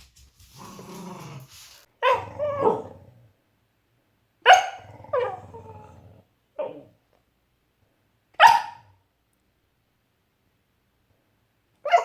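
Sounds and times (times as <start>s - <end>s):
dog barking: 2.0s - 2.9s, 4.4s - 5.4s, 8.4s - 9.0s.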